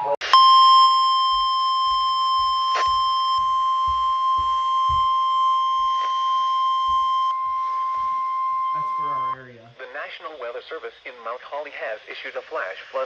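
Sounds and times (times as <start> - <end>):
loud steady alert beep: 0.2 - 9.4.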